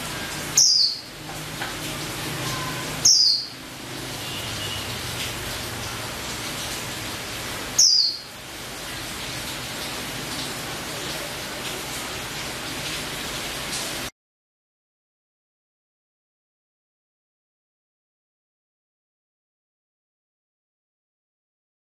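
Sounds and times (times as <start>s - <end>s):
faint high bird chirps: 0.6s - 1.1s, 2.4s - 3.6s, 7.8s - 8.3s.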